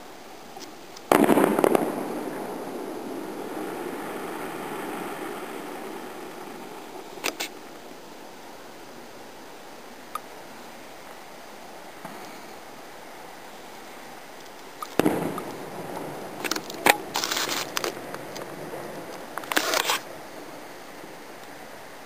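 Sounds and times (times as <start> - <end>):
fireworks crackling with pops: 0.0 - 22.0
firework bang: 1.1 - 7.6, 14.9 - 20.0.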